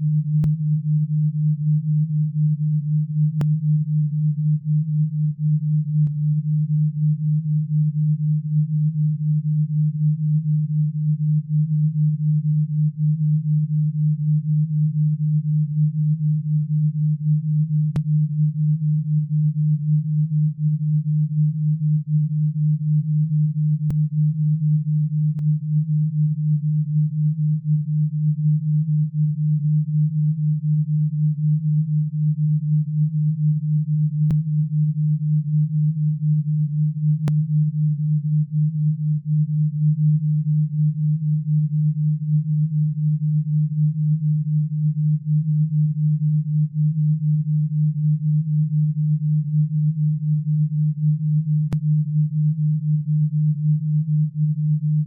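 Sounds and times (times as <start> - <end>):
low pulsing pure tone: 0.0 - 55.0.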